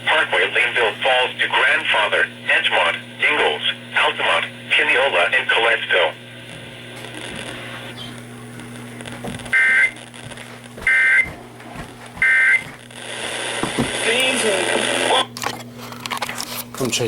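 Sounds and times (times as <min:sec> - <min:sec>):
steady low hum: 0:00.0 - 0:17.0
buzzing two-tone digital data: 0:09.5 - 0:10.2, 0:10.9 - 0:11.3, 0:12.2 - 0:14.4.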